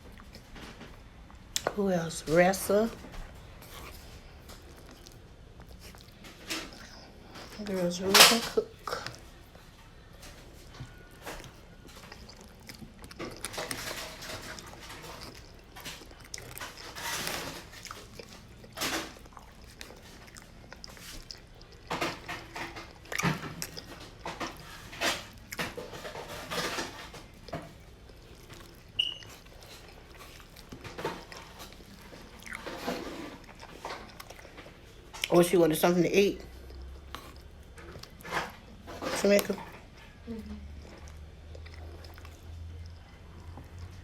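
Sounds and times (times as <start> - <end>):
person chewing food: 0.0 - 1.8, 2.6 - 7.8, 8.7 - 35.4, 36.4 - 44.0
high squeak: 29.0 - 29.3.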